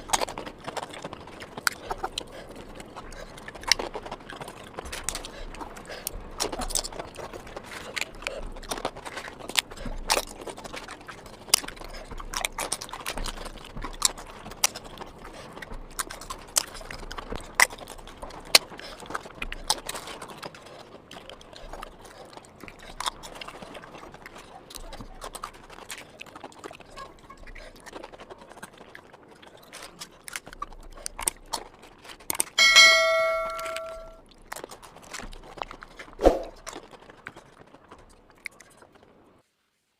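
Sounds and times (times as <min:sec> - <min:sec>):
chewing clicks and crunches: 0:00.0 - 0:32.6, 0:34.2 - 0:39.3
bright bell-like ding: 0:32.6 - 0:34.2.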